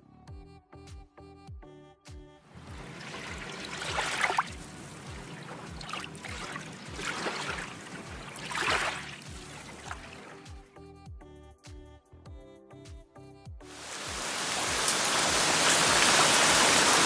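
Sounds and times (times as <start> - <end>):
soft background music beat: 0.0 - 15.6
rushing splashing water: 2.6 - 10.5, 13.8 - 17.0.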